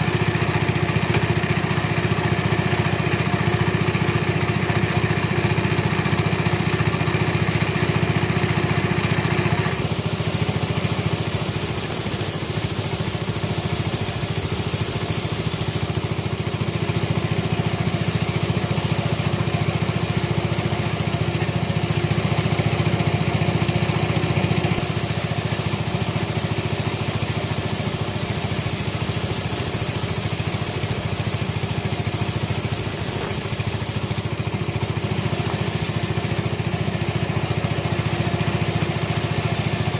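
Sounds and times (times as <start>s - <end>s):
sawmill engine drone: 0.0s - 39.9s
high hiss: 9.7s - 15.9s, 24.8s - 31.0s.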